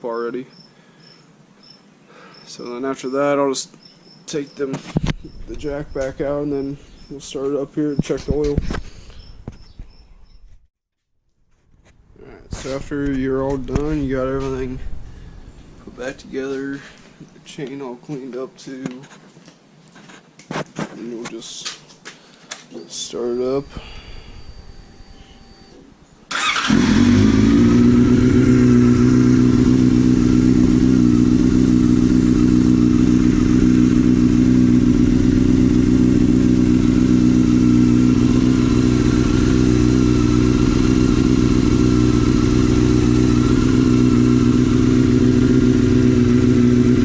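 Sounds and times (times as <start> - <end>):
motorcycle engine starting and idling: 4.8 - 9.1, 26.3 - 47.0.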